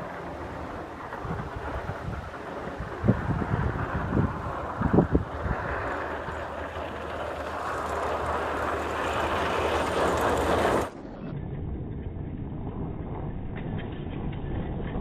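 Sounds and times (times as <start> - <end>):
wind and snow rushing: 0.0 - 11.9
truck engine rumble: 0.0 - 15.0.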